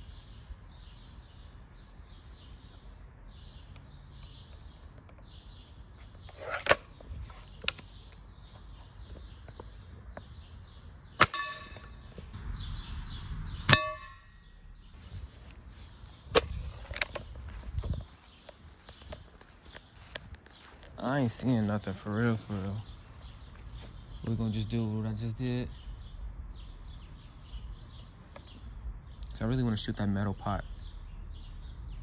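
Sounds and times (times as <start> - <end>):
birds chirping: 0.0 - 32.0
air rifle cracks: 16.3 - 17.3.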